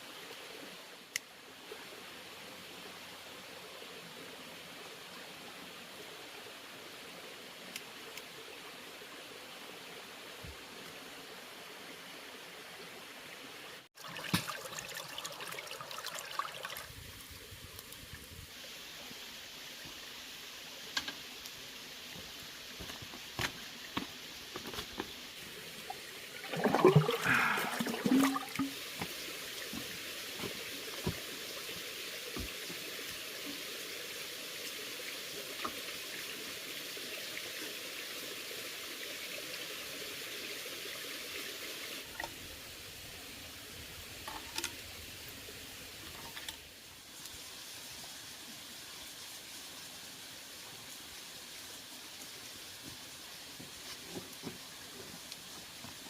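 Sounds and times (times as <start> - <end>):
water trickling: 13.9 - 18.4, 22.8 - 33.7.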